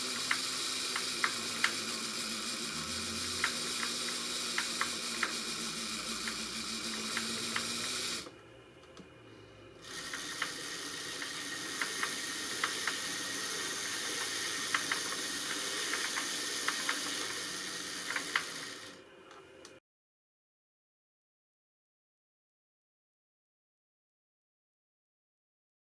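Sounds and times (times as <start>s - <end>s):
electric motor and gearbox whine: 0.0s - 9.0s, 9.7s - 19.8s.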